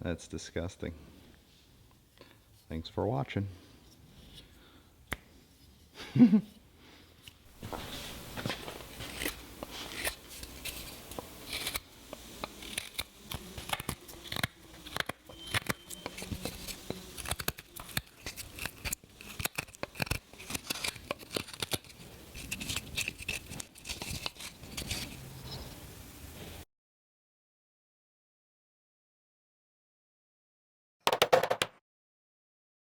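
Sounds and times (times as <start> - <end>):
knife carving wood: 7.2 - 25.2.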